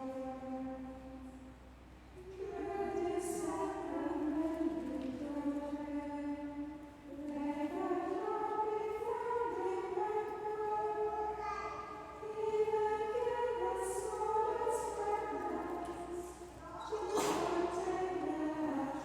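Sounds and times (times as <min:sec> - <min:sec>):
women's choir singing chant: 0:02.3 - 0:19.0.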